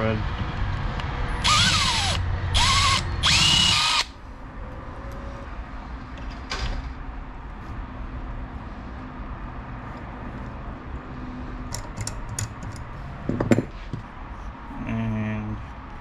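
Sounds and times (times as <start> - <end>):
power drill boring into metal: 1.4 - 4.1.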